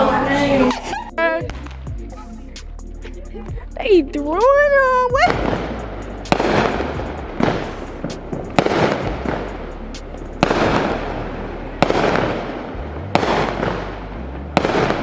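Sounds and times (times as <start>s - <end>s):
fireworks sharp bangs: 5.2s - 11.2s, 11.8s - 13.9s, 14.6s - 15.0s
fireworks crackle: 5.2s - 14.0s, 14.6s - 15.0s.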